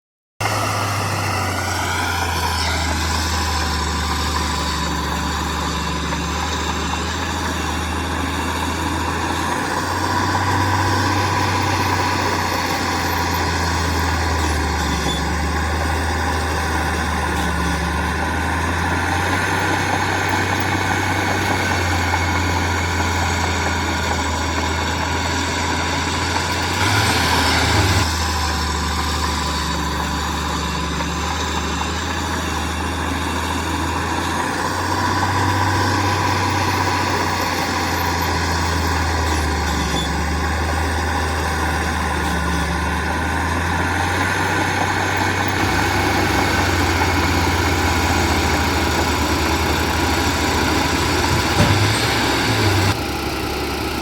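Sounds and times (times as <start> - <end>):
heavy diesel engine running: 0.4 - 54.0.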